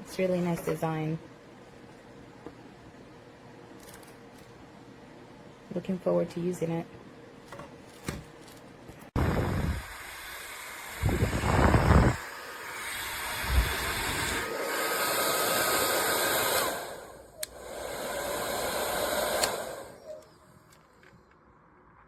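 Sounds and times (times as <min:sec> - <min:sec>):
hair dryer blowing air: 0:09.2 - 0:20.2
wind buffeting microphone: 0:11.0 - 0:12.2
hair dryer switch click: 0:19.2 - 0:19.7.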